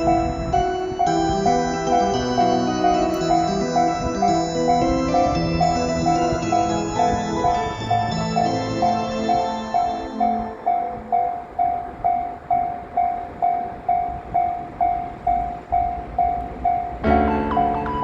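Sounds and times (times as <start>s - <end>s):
background music: 0.0s - 11.6s, 17.0s - 18.0s
level crossing warning bell: 0.0s - 18.0s
train passing rumble: 0.0s - 18.0s.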